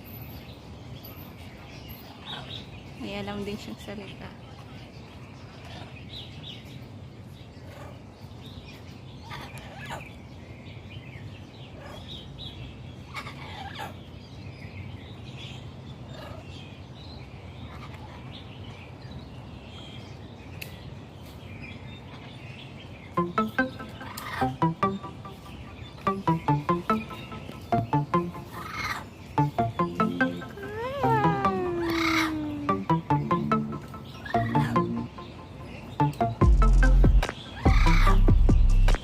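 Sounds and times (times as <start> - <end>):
birds chirping and calling: 22.1 - 38.9.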